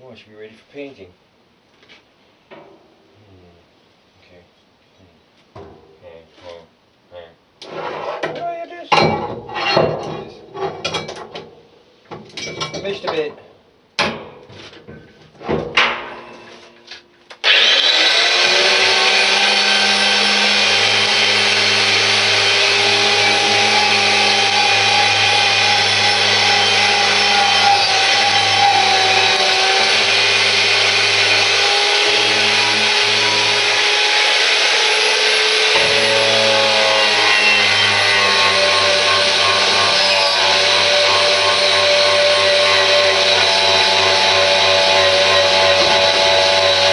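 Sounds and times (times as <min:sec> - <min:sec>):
power tool grinding paint off metal: 0:17.4 - 0:46.9.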